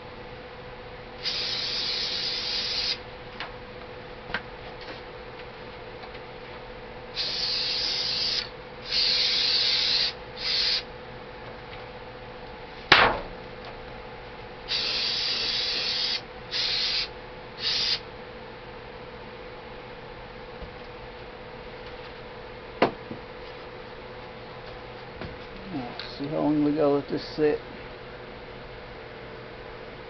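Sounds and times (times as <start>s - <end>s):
aerosol spray hissing: 1.2s - 3.0s, 7.2s - 10.9s, 14.7s - 18.0s.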